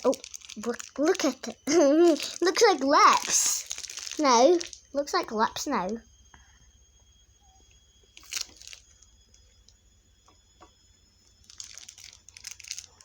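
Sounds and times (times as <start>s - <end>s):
slime squishing: 0.0s - 6.0s.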